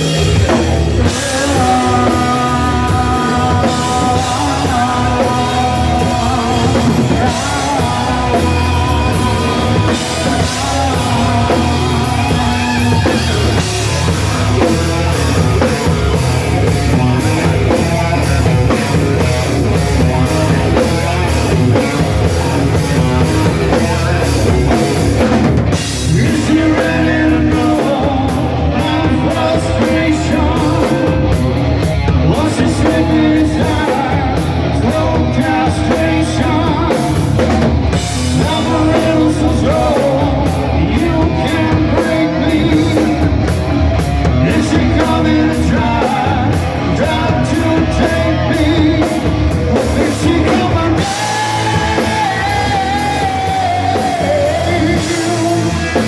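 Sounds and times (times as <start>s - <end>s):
bass guitar: 0.0s - 56.0s
drum kit: 0.0s - 56.0s
electric guitar: 0.0s - 56.0s
person singing: 0.0s - 56.0s.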